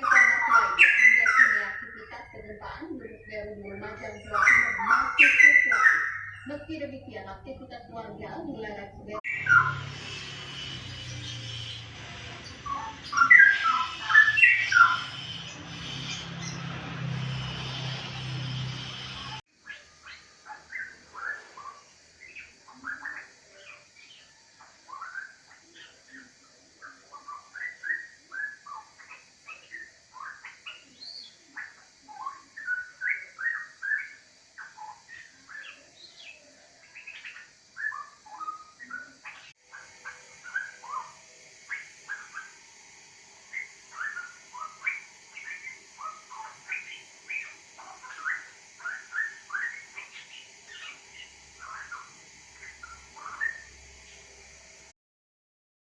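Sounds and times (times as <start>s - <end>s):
bird singing whistled phrases: 0.0s - 2.2s, 3.0s - 6.5s, 12.6s - 16.0s, 24.9s - 42.5s, 43.5s - 51.0s.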